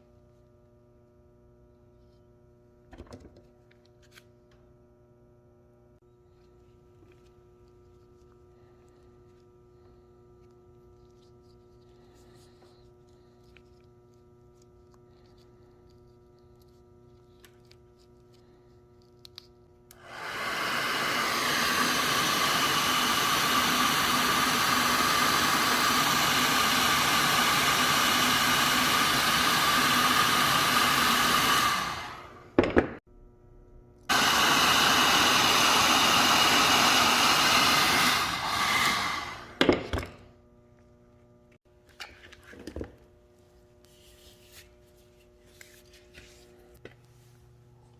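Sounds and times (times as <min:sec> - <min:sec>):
blower motor rushing: 0:19.9 - 0:32.6, 0:34.0 - 0:39.8.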